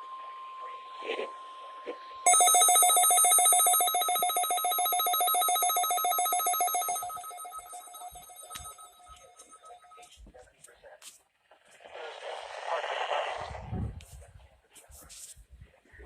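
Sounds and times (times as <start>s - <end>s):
rapidly pulsing electronic beep: 2.3s - 10.0s
steady warning alarm tone: 2.3s - 10.0s.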